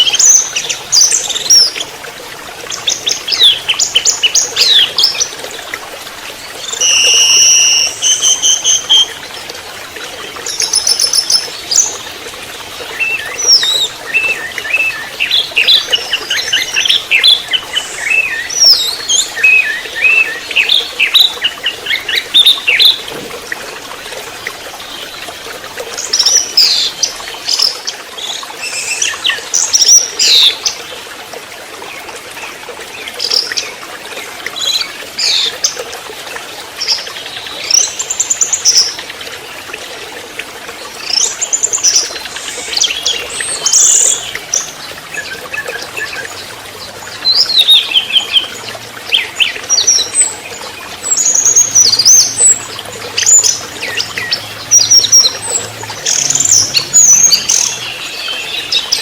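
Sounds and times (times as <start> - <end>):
bird singing chirps and trills: 6.3 - 9.5, 10.1 - 23.2, 26.0 - 31.0, 41.0 - 59.0.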